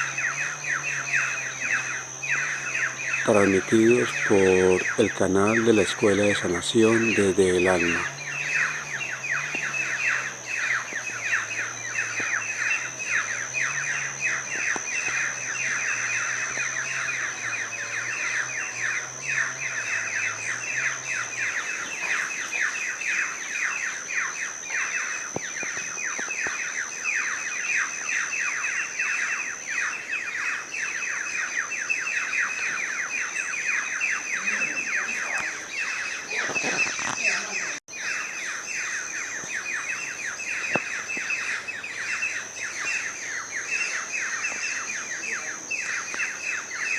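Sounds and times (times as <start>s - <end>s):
steady high thin tone: 0.0s - 25.3s
small birds chirping: 0.0s - 46.9s.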